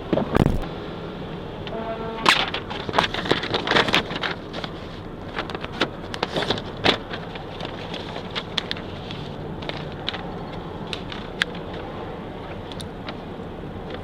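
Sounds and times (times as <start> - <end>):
roadside traffic noise: 0.0 - 14.0.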